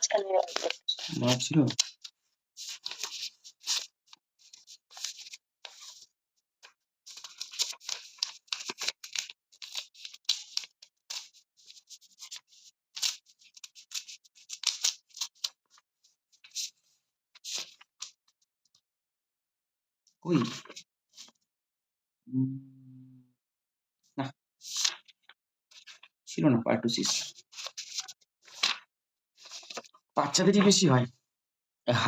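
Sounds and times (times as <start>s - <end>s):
book pages rustling: 0.1s - 18.2s, 20.4s - 21.4s, 24.6s - 26.1s, 27.0s - 30.0s.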